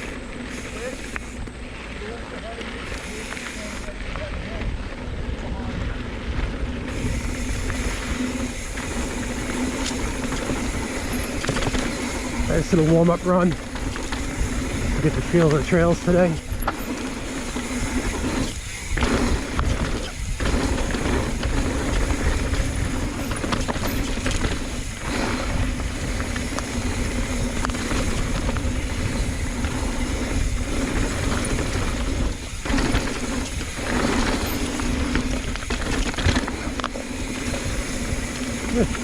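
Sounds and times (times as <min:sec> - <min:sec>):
bike rattling over ground: 0:00.0 - 0:39.0
bike tyres rolling on dirt: 0:00.0 - 0:39.0
wind on camera microphone: 0:13.6 - 0:16.6, 0:17.6 - 0:39.0.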